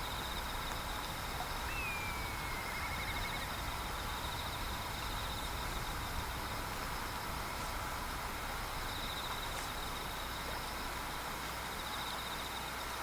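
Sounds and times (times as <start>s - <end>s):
outdoor background rumble: 0.0s - 12.9s
insects trilling: 0.0s - 13.0s
whistled call sliding down: 1.6s - 3.6s.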